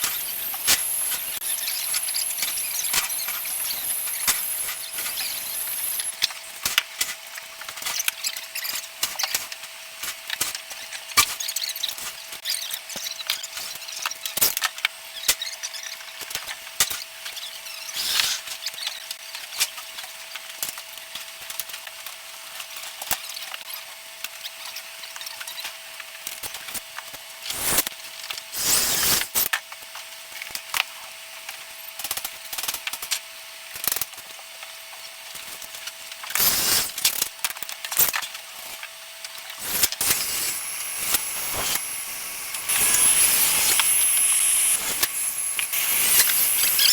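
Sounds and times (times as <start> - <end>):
faint steady whine: 0.0 - 6.2, 39.6 - 46.9
hand tools clicking on pipe: 39.6 - 46.9.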